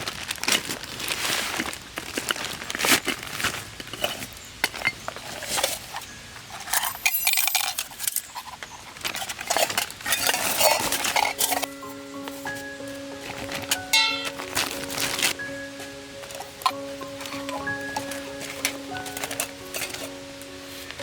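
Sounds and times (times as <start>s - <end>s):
metal camping gear clinking: 1.5s - 21.0s
music: 10.3s - 21.0s.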